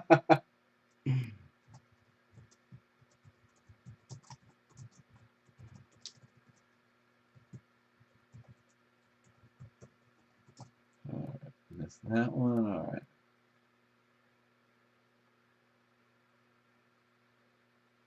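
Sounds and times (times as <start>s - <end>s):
short vocal sound: 1.1s - 1.4s
computer keyboard typing: 1.6s - 6.7s, 7.3s - 10.7s.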